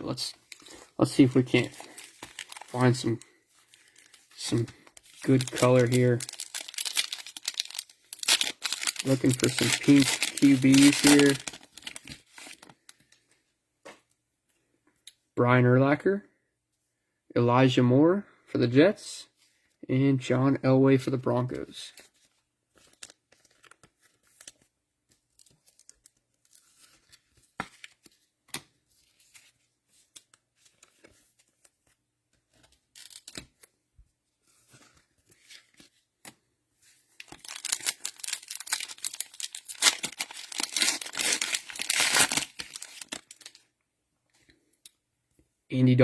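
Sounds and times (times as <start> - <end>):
cellophane wrapper tearing and crinkling: 0.5 - 12.9, 33.0 - 33.5, 37.2 - 43.7.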